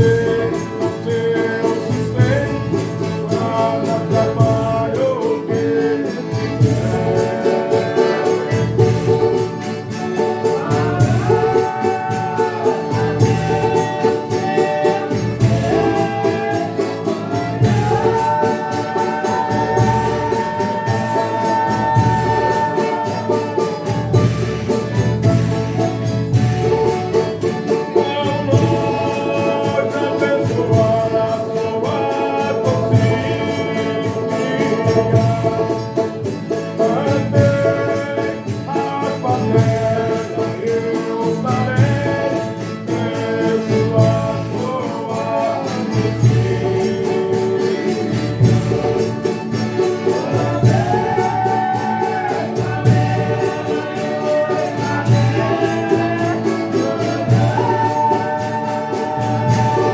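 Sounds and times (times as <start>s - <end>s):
group singing in chorus: 0.0s - 59.9s
string instruments: 0.0s - 59.9s
tambourine: 0.0s - 59.9s.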